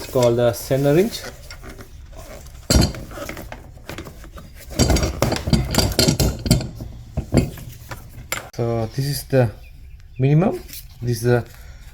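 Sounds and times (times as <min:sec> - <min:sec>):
metal tool clinking and rattling: 0:00.0 - 0:08.6.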